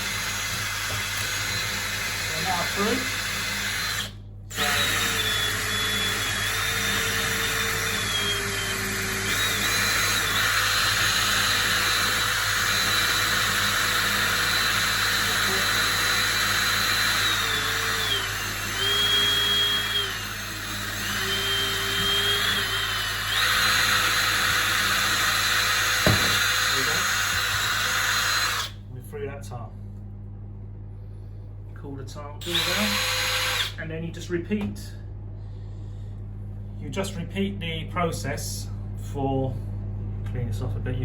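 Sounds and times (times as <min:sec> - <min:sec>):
electric drill cutting tile: 0:00.0 - 0:28.7, 0:32.4 - 0:33.8.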